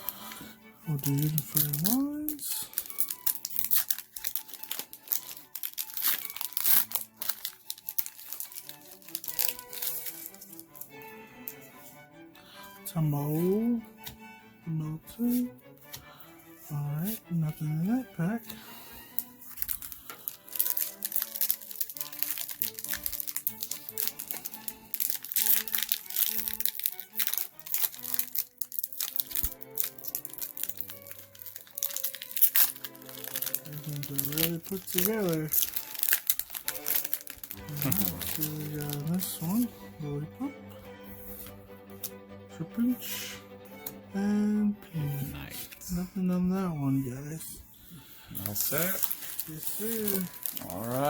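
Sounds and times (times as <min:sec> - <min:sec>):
foil wrapper crinkling and tearing: 0:00.0 - 0:11.0, 0:18.6 - 0:39.9, 0:48.3 - 0:51.0
background music: 0:00.0 - 0:51.0.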